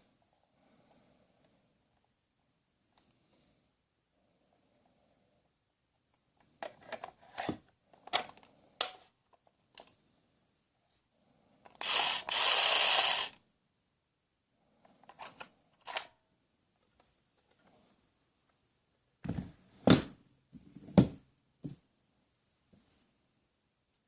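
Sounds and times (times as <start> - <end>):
plastic toy tools clicking: 11.7 - 13.4
toy power tool running: 11.8 - 13.4.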